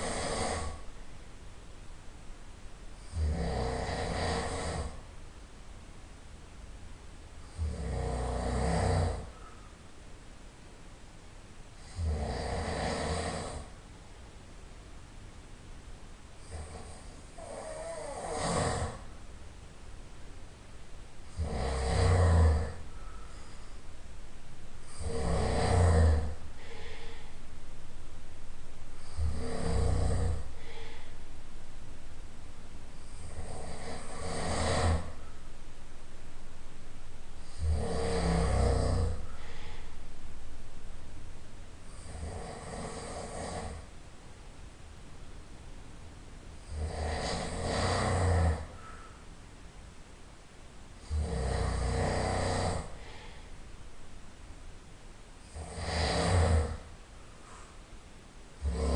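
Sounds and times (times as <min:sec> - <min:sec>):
person snoring loudly: 0:00.0 - 0:00.8, 0:03.0 - 0:05.0, 0:07.5 - 0:09.3, 0:11.8 - 0:13.7, 0:16.4 - 0:19.1, 0:21.3 - 0:22.9, 0:24.9 - 0:27.3, 0:29.0 - 0:31.1, 0:33.0 - 0:35.2, 0:37.4 - 0:39.8, 0:41.9 - 0:43.9, 0:46.6 - 0:48.8, 0:51.0 - 0:53.3, 0:55.4 - 0:56.9, 0:58.6 - 0:58.9
breathy exhale: 0:09.3 - 0:09.8, 0:22.8 - 0:23.9, 0:26.5 - 0:27.6, 0:29.0 - 0:31.3, 0:37.4 - 0:40.2, 0:48.7 - 0:49.2, 0:51.9 - 0:53.6, 0:57.3 - 0:57.9
low rumble: 0:39.0 - 0:42.0.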